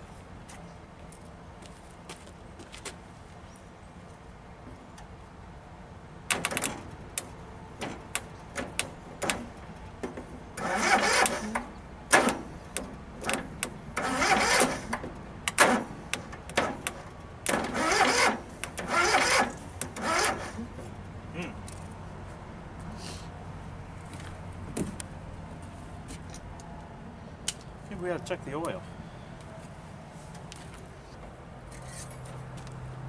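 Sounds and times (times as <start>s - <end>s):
sharp clicks and knocks: 6.3s - 20.6s
short rasping bursts: 10.6s - 12.4s, 14.0s - 15.0s, 17.6s - 20.7s.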